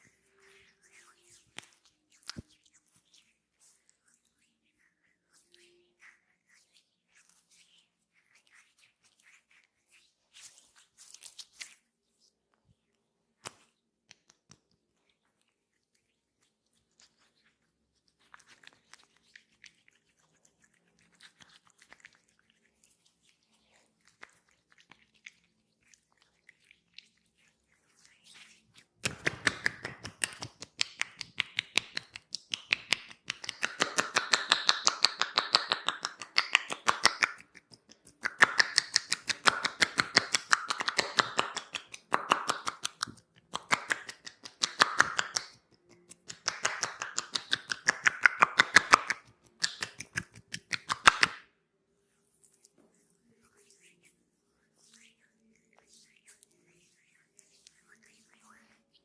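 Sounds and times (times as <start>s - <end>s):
hands tapping on skin: 29.0s - 51.4s.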